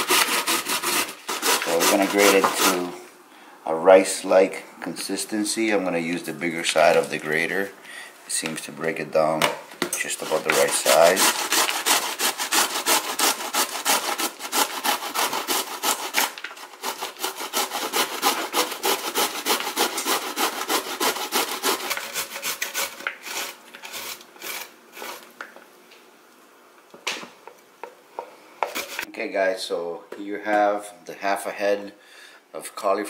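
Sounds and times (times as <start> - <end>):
cauliflower rasping on grater: 0.0 - 3.0, 10.0 - 25.3.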